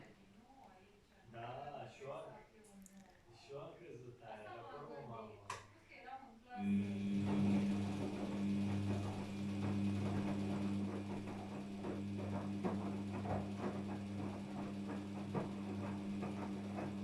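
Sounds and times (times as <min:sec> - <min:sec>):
washing machine electrical hum: 0:06.5 - 0:17.0.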